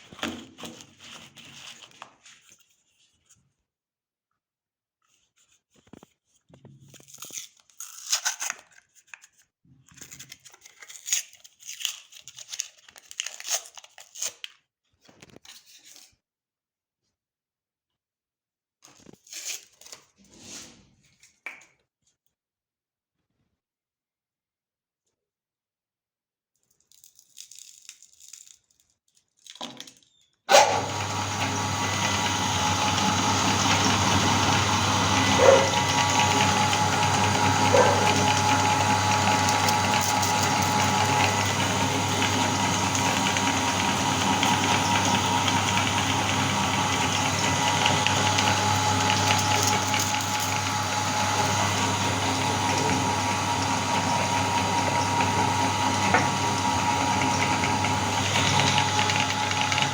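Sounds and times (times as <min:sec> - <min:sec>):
electric meat grinder running: 0:30.5 - 0:59.9.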